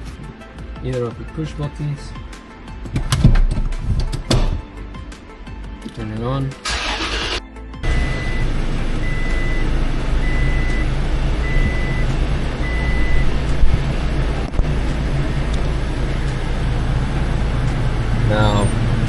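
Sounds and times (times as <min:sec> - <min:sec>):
car engine idling: 0:06.6 - 0:19.0
dashboard warning chime beeping: 0:07.8 - 0:13.4.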